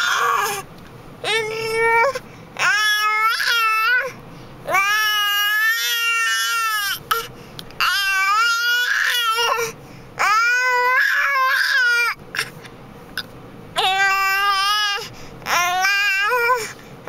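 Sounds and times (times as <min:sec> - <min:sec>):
wailing cries: 0:00.0 - 0:00.6, 0:07.8 - 0:12.2.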